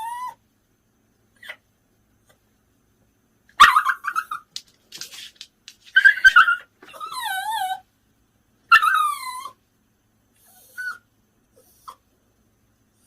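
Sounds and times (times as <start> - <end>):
dog whining: 0.0 - 0.4, 5.9 - 7.9, 8.7 - 9.6, 10.4 - 12.0
dog yelp: 0.0 - 0.4, 3.6 - 4.5, 5.9 - 7.8, 8.7 - 9.6, 10.4 - 11.0.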